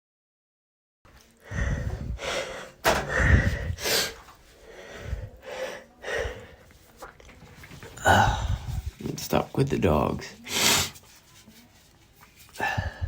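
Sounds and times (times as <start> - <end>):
gasping in-breaths: 1.4 - 6.7, 7.8 - 8.9, 12.6 - 13.0.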